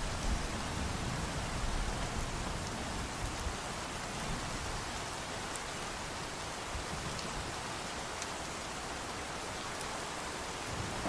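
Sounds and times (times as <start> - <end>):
steady rainfall: 0.0 - 11.0.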